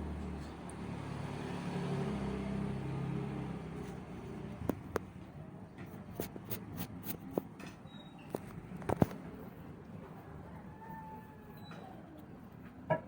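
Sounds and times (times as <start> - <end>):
engine hum: 0.0 - 7.5.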